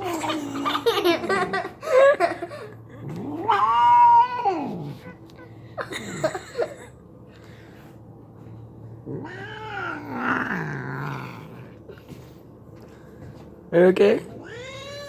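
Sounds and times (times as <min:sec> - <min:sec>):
cat yowling: 0:03.2 - 0:05.2, 0:09.1 - 0:11.6, 0:14.4 - 0:15.0.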